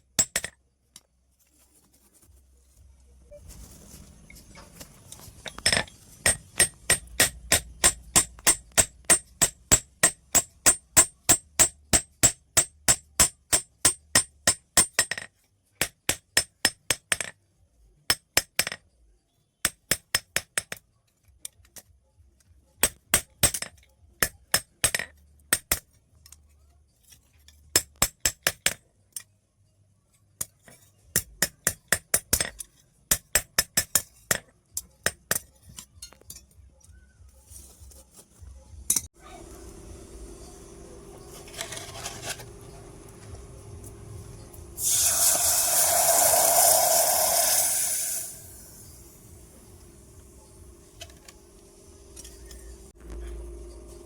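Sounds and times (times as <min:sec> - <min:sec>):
hammer striking metal on anvil: 0:05.6 - 0:15.2.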